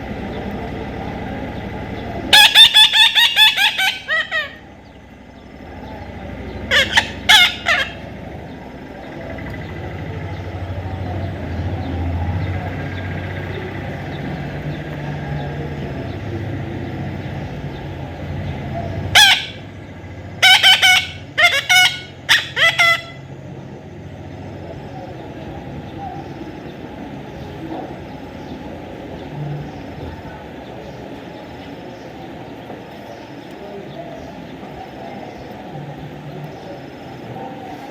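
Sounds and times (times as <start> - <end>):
steady low rumble: 0.0 - 2.5, 3.1 - 22.3
parrot harsh calls: 2.3 - 4.8, 6.6 - 8.2, 19.1 - 19.7, 20.4 - 23.3.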